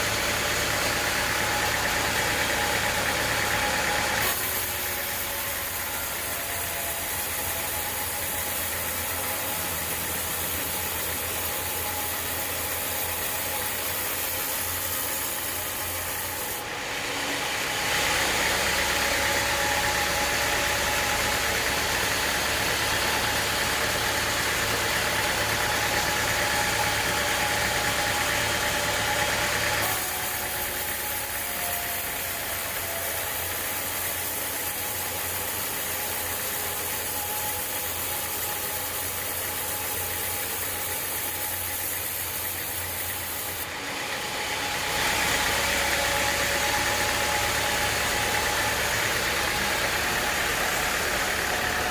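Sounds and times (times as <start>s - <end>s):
band saw humming: 0.0s - 51.9s.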